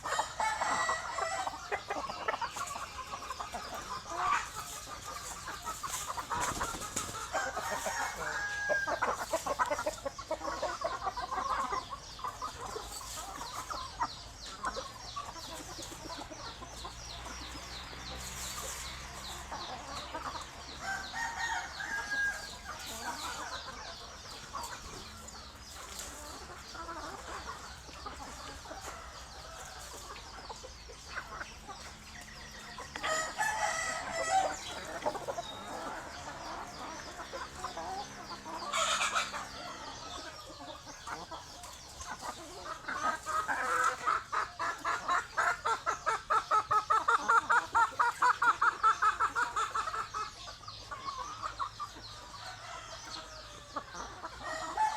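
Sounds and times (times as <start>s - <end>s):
rooster crowing: 0.0s - 1.6s, 7.3s - 9.1s, 20.8s - 22.6s, 32.5s - 34.7s, 54.4s - 54.9s
chickens clucking: 0.0s - 54.9s.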